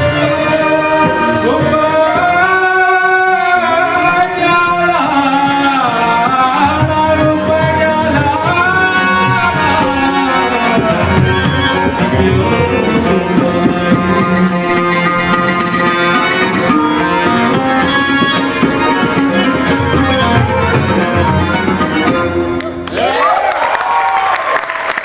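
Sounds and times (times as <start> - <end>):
fast percussion beat: 5.2 - 22.9.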